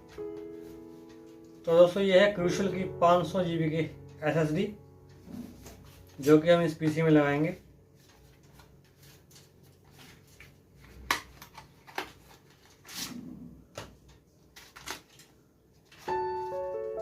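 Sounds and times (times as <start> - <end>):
background piano music: 0.0 - 10.8, 15.9 - 17.0.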